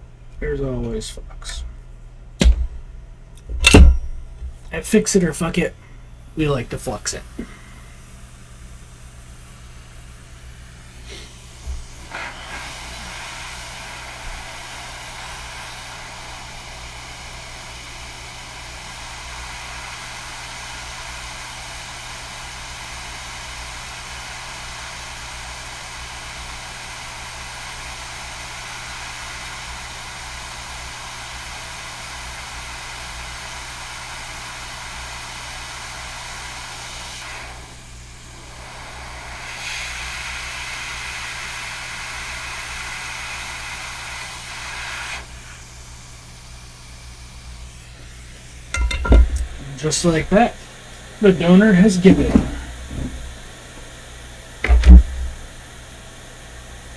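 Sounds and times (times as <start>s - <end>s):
low electrical hum: 0.0s - 12.1s, 48.3s - 55.8s
hot air blower hissing: 2.4s - 56.9s.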